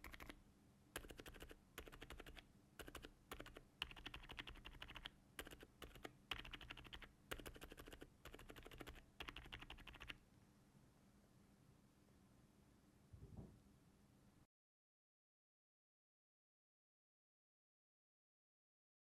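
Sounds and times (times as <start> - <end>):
quiet keyboard typing: 0.0 - 0.4, 1.0 - 10.2.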